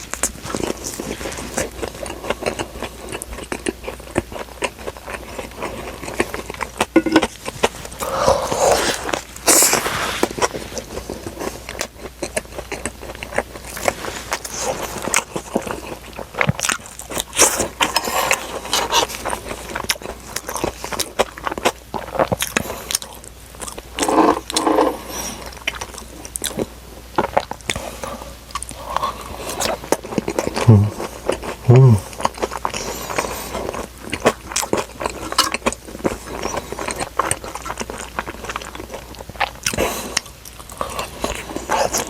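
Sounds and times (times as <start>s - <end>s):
biting and chewing food: 0.0s - 42.0s
person humming: 30.6s - 31.0s, 31.7s - 32.0s.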